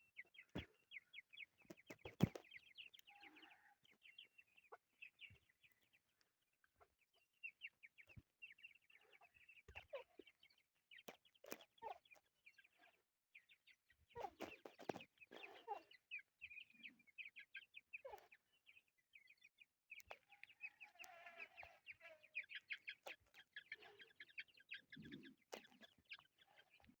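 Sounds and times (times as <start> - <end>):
lower louder bird calls: 0.0 - 5.9, 7.1 - 27.0
partridge chicks peeping: 0.0 - 5.9, 7.4 - 27.0.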